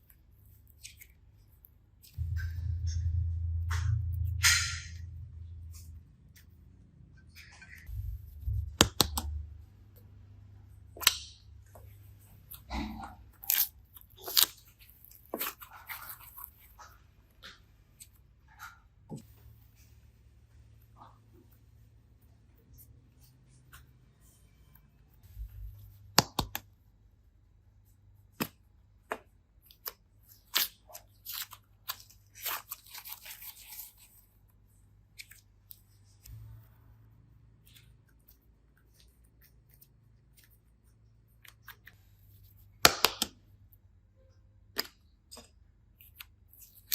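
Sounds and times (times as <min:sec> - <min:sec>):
hands squishing slime: 0:07.4 - 0:09.4
sharp clicks and snips: 0:07.5 - 0:09.4.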